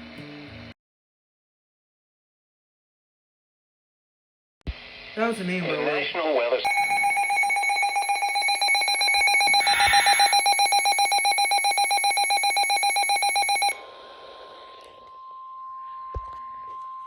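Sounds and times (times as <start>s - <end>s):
rapid loud alarm beeps: 6.7s - 13.8s
steady single-pitch alarm tone: 6.7s - 13.9s.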